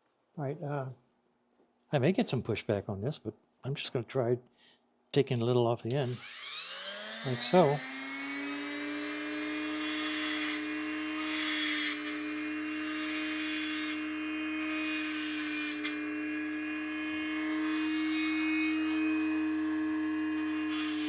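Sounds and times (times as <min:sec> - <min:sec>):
grinding disc on metal ring: 0:06.0 - 0:21.0
rotary tool running at high speed: 0:06.0 - 0:21.0.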